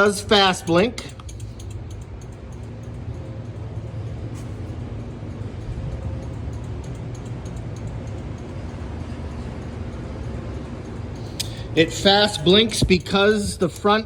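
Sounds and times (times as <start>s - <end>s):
low engine rumble: 0.0s - 14.0s.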